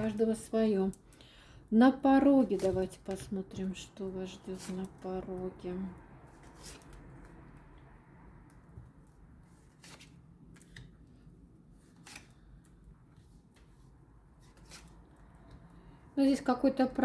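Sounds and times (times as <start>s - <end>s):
cards being handled: 6.4s - 7.3s, 9.5s - 11.0s, 11.8s - 15.1s.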